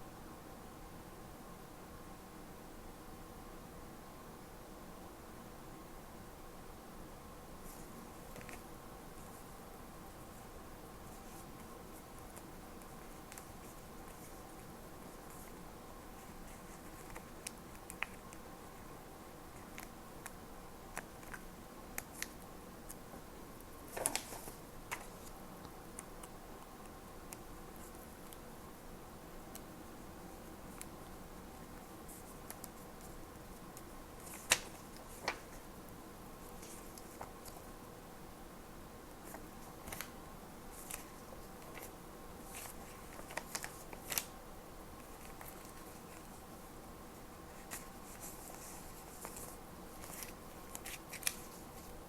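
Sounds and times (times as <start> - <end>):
faint steady hum: 0.0 - 52.0
paper rustling and clicking: 7.7 - 8.6, 11.2 - 14.4, 16.2 - 18.4, 19.5 - 21.4, 22.0 - 23.0, 23.9 - 26.4, 31.8 - 33.2, 33.8 - 35.6, 39.2 - 44.3, 45.0 - 46.4, 47.5 - 52.0.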